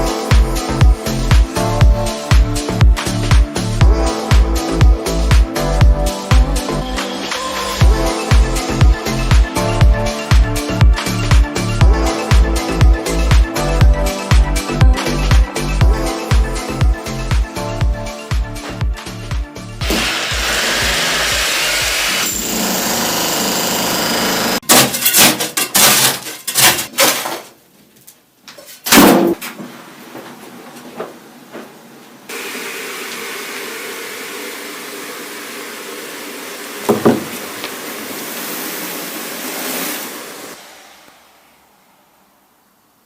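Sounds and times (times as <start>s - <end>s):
power tool running: 19.8s - 24.6s
sharp knocks: 36.9s - 37.4s
thump: 36.9s - 37.4s.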